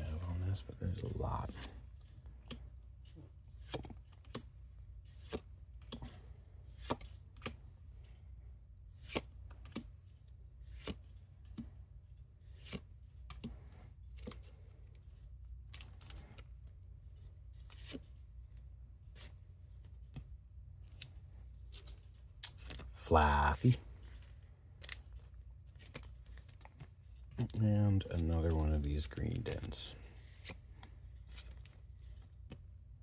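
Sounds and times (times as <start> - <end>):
cards flipped with sharp snaps: 6.8 - 7.6.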